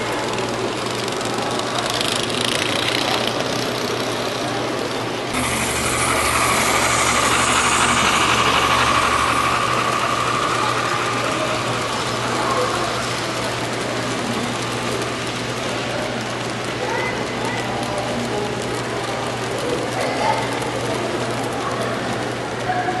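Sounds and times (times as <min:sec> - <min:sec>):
model train whirring and rattling: 0:00.0 - 0:23.0
high motor whine: 0:05.3 - 0:16.4.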